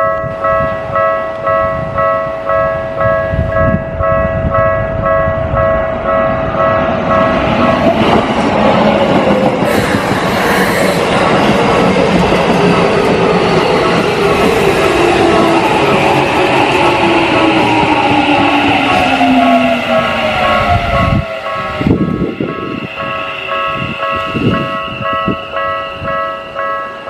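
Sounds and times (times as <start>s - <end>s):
level crossing warning bell: 0.0s - 8.2s, 15.3s - 27.0s
train wheel and rail noise: 0.0s - 27.0s.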